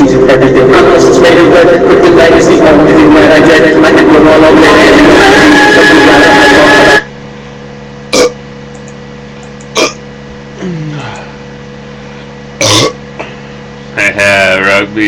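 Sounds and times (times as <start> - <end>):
song from computer speaker: 0.0 - 7.1
man hiccup-like gulps: 8.1 - 8.4, 9.7 - 11.2, 12.6 - 13.4
low falling croak: 9.7 - 11.2, 12.6 - 13.1.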